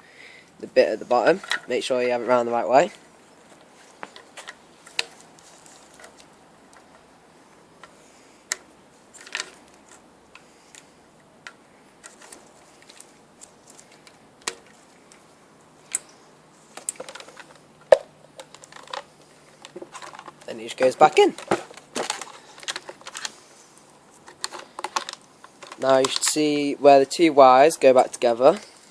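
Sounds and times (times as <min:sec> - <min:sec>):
hard plastic parts clicking: 0:01.4 - 0:01.7, 0:07.8 - 0:15.2, 0:16.7 - 0:23.4, 0:24.2 - 0:26.4.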